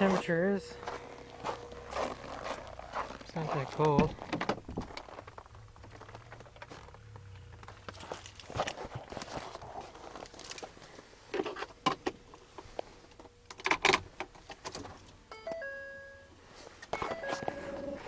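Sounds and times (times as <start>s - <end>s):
dashboard chime tones: 15.3s - 18.0s.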